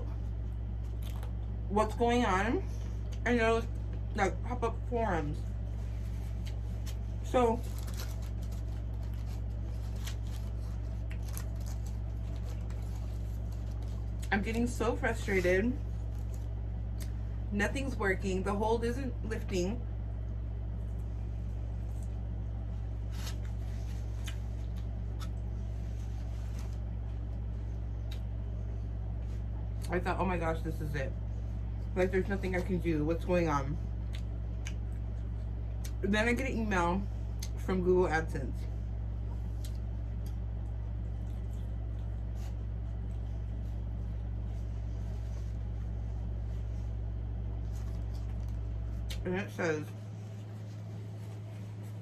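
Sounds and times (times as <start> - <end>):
steady low hum: 0.0 - 52.0
person chewing food: 0.8 - 1.6, 23.2 - 25.5, 39.4 - 43.6.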